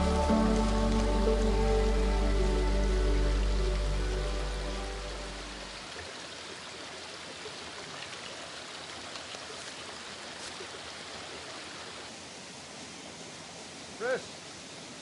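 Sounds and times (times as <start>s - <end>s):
background music: 0.0s - 5.8s
river water rushing: 0.0s - 15.0s.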